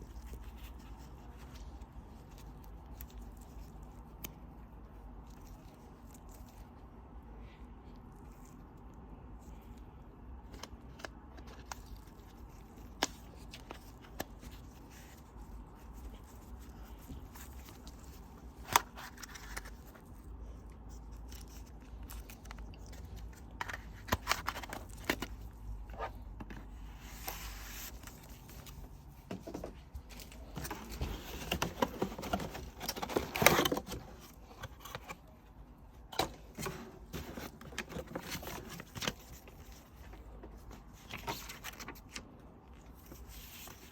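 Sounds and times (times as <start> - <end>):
packaging rustling and scraping: 10.4 - 43.9.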